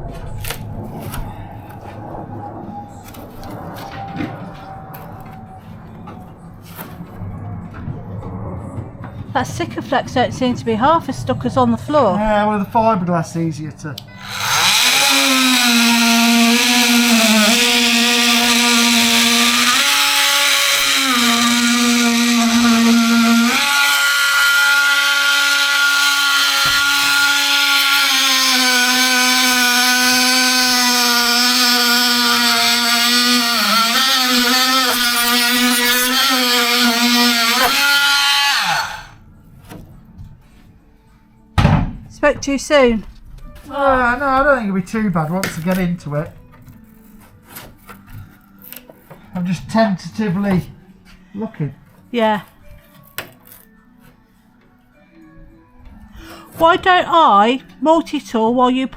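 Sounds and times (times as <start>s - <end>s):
handheld power tool whining: 14.1s - 39.2s.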